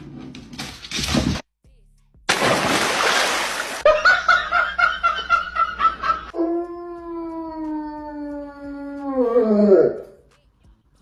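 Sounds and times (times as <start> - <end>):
dog howling: 6.3 - 10.2.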